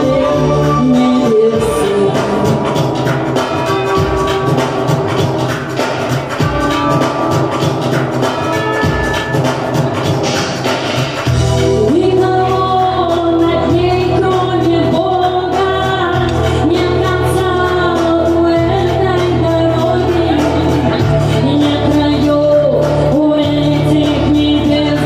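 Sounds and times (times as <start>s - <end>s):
woman singing a pop ballad: 0.0s - 4.1s, 11.6s - 25.0s
karaoke backing track: 0.0s - 25.0s.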